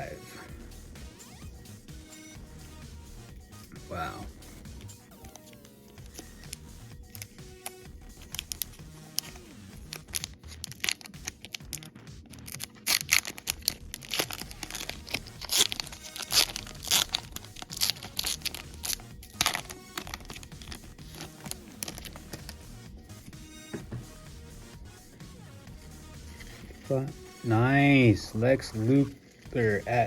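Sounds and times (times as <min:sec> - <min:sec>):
foil pack tearing and crinkling: 0:08.2 - 0:22.6.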